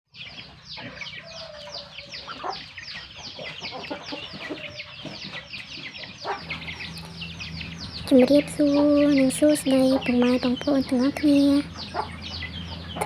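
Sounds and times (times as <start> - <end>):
chicks peeping: 0.2 - 13.0
hens clucking: 6.4 - 13.0.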